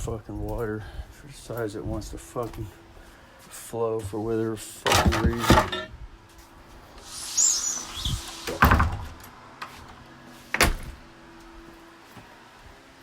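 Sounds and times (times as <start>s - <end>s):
door squeaking: 7.0s - 9.4s
door banging: 7.5s - 9.4s.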